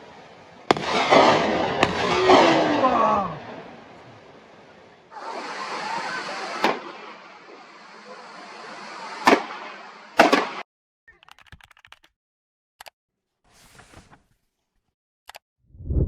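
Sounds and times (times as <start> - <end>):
gunshots: 0.7 - 4.2, 5.2 - 10.6.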